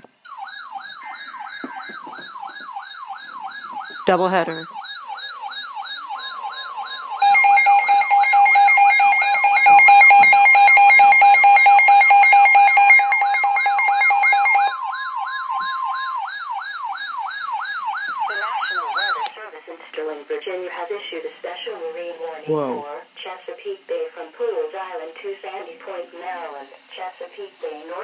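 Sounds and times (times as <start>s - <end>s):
rapidly pulsing alarm tone: 0.3s - 19.3s
siren-like sweeping tone: 0.4s - 19.3s
steady warning tone: 0.8s - 19.3s.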